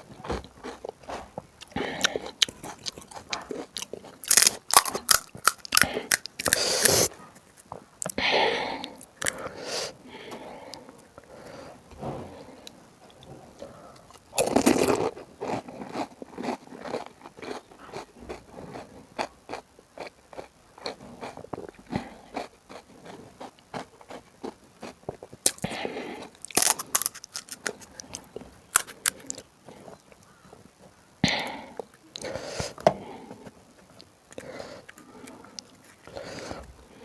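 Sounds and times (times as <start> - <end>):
sharp chewing clicks: 0.6 - 8.2, 14.0 - 30.6
crisp shells crunching: 2.4 - 7.6, 14.2 - 17.7, 26.3 - 29.5.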